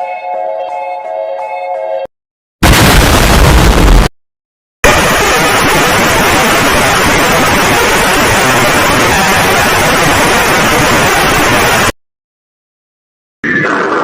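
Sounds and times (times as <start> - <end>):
harsh static noise: 2.6 - 4.1, 4.8 - 12.0, 13.4 - 14.0.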